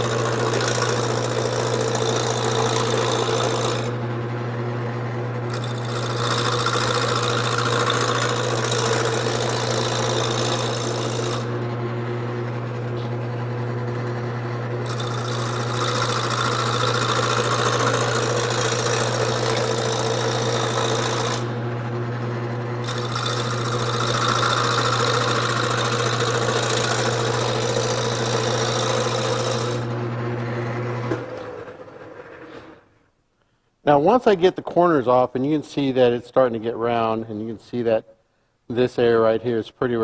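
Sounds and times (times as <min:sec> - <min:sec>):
gouge scraping wood: 0:00.0 - 0:04.0, 0:05.4 - 0:11.9, 0:14.8 - 0:21.5, 0:22.8 - 0:29.9
lathe motor humming: 0:00.0 - 0:33.0.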